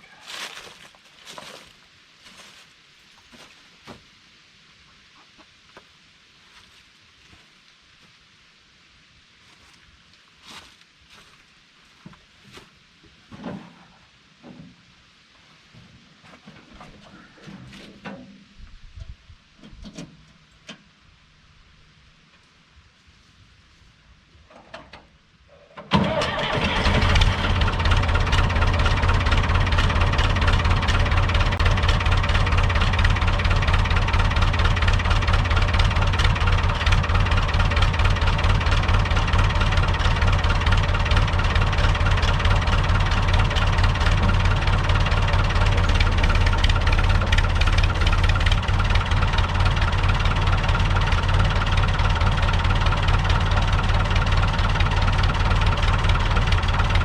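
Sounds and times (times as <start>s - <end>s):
tractor diesel engine starting: 25.7s - 57.0s.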